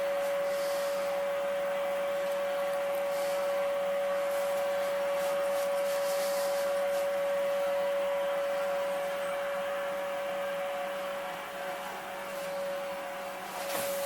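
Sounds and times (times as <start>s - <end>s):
high-pitched background hum: 0.0s - 14.0s.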